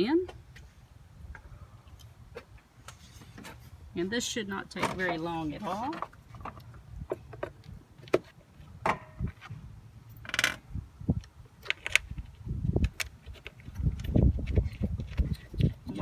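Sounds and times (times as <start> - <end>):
wind rumble on microphone: 6.4 - 8.0, 8.6 - 16.0.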